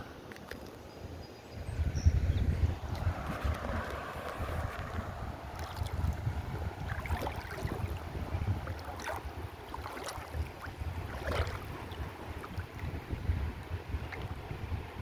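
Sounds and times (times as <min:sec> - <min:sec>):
river water splashing and lapping: 0:00.0 - 0:15.0
wind on microphone: 0:01.0 - 0:15.0.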